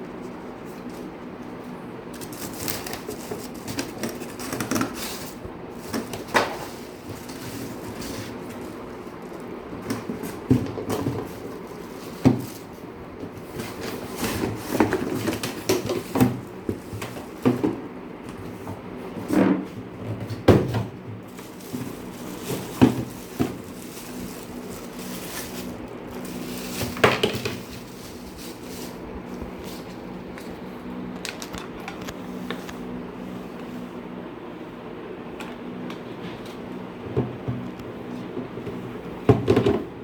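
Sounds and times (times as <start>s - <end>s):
box and packaging handled: 2.1s - 30.6s.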